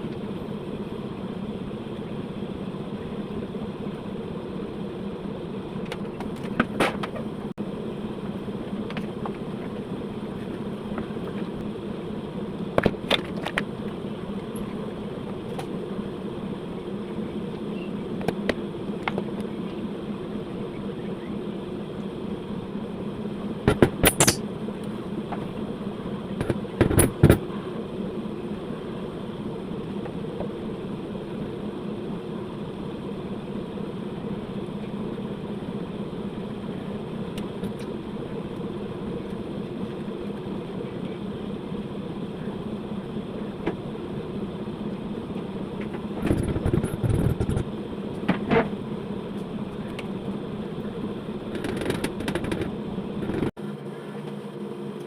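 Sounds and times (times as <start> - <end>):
steady mechanical hum: 0.0 - 55.0
sharp clicks and knocks: 51.6 - 53.5.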